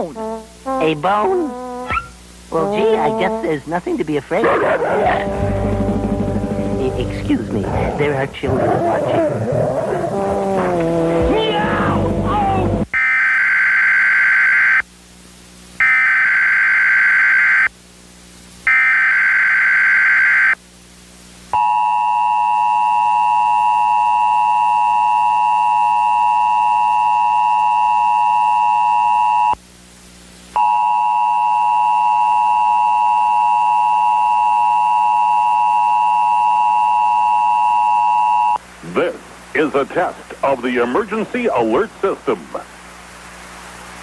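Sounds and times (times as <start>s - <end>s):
buzzy data warble: 0.8s - 3.6s.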